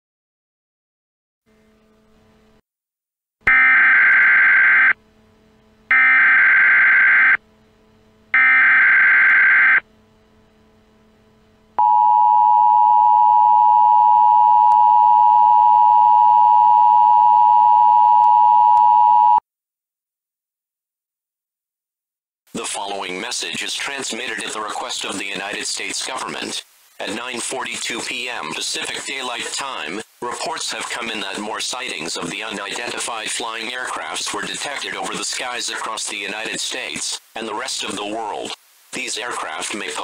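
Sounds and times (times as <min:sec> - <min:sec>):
two-tone attention signal: 0:11.8 - 0:19.4.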